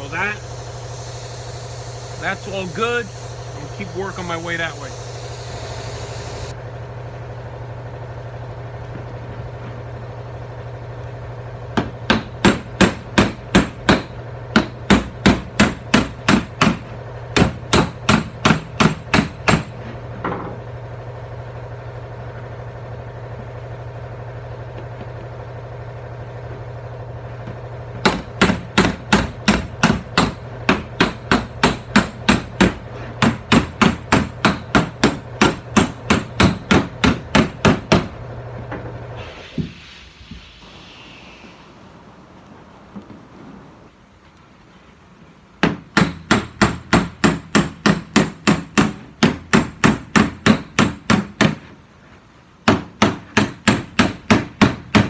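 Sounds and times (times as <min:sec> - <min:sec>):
steady low hum: 0:00.0 - 0:55.0
hammer tapping on metal panel: 0:28.0 - 0:38.1, 0:45.6 - 0:51.6.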